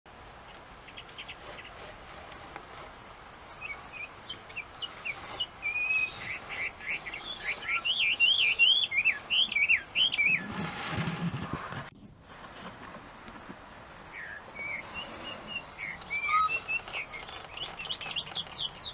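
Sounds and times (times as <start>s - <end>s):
bird singing whistled phrases: 3.6s - 10.5s, 14.2s - 18.9s.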